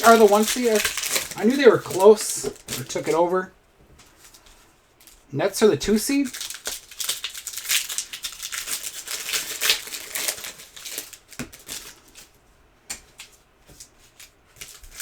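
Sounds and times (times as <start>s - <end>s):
card pack wrappers crinkling: 0.0s - 3.5s, 5.9s - 12.4s, 13.1s - 15.0s
cards clicking and tapping: 12.9s - 15.0s.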